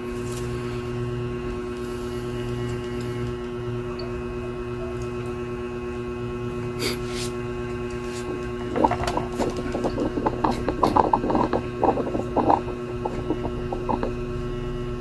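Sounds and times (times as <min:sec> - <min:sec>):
steady electrical hum: 0:00.0 - 0:15.0
irregular rubbing and clicking: 0:07.9 - 0:14.2.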